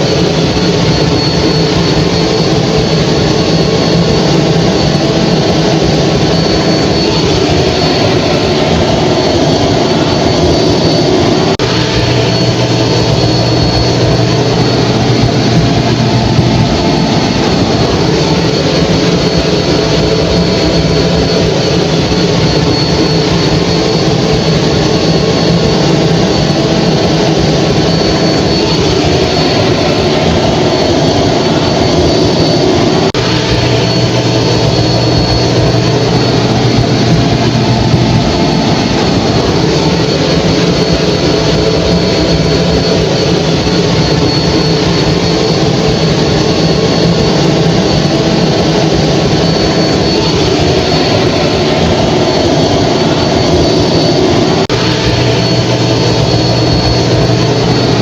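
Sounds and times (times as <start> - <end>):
hair dryer running: 3.4 - 21.2.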